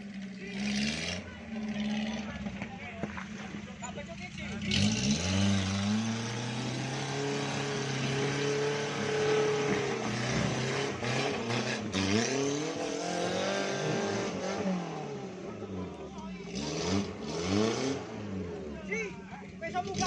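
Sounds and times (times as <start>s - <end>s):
car engine revving hard: 0.5s - 2.3s, 4.5s - 15.8s, 16.4s - 18.8s.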